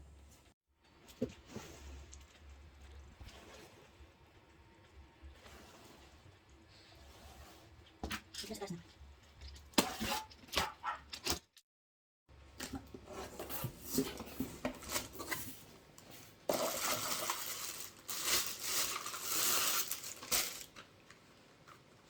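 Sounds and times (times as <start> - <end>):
plastic wrapping rustling: 13.3 - 22.0.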